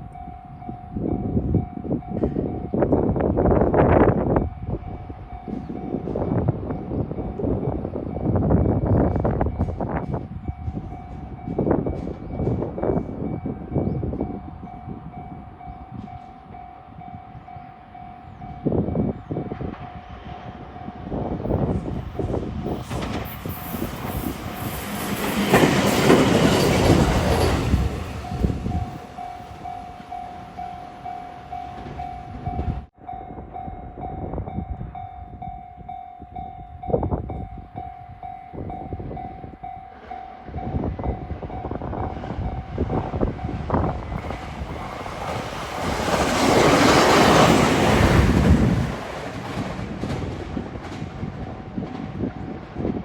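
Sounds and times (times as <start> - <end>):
crossing warning bell ringing: 0.0 - 21.7, 23.2 - 52.6
passing rush of train: 0.0 - 53.0
train wheels clattering: 22.6 - 30.5.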